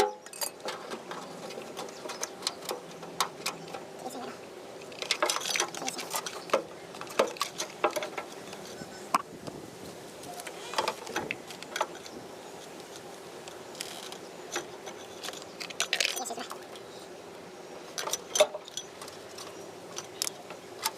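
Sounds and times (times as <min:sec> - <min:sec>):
hood parts clattering: 0:00.0 - 0:04.2, 0:04.8 - 0:09.3, 0:17.9 - 0:20.9.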